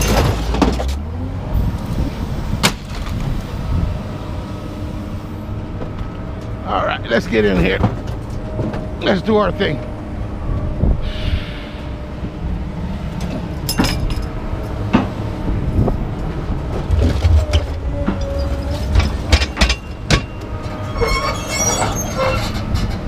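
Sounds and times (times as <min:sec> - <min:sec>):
vehicle engine rumbling: 0:00.0 - 0:23.0
brief squeal: 0:11.0 - 0:12.2, 0:20.7 - 0:22.9
metal clanks and knocks: 0:13.2 - 0:15.2, 0:16.7 - 0:23.0.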